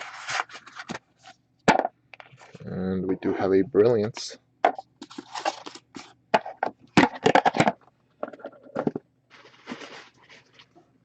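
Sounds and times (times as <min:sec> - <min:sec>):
packaging rustle: 0:09.3 - 0:10.8.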